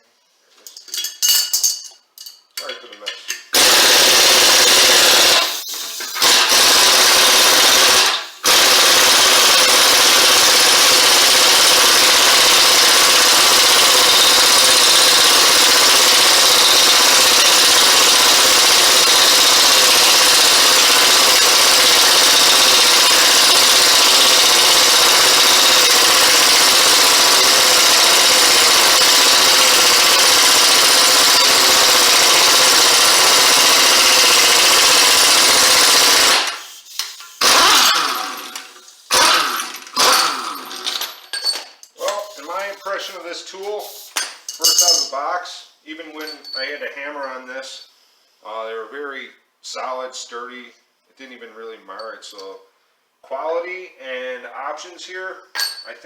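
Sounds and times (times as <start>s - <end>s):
impact wrench hammering: 3.5s - 43.2s.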